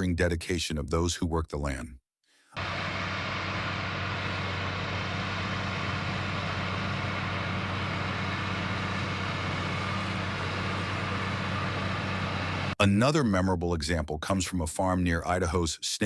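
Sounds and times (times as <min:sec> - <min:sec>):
tractor diesel engine running: 0:02.6 - 0:12.8.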